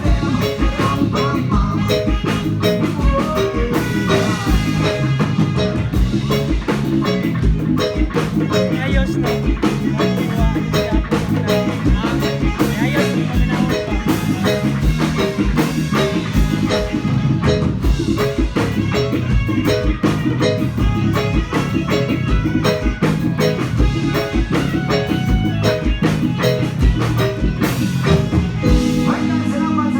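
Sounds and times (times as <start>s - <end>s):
steady drum beat: 0.0s - 29.9s
mallet percussion notes: 22.0s - 29.9s.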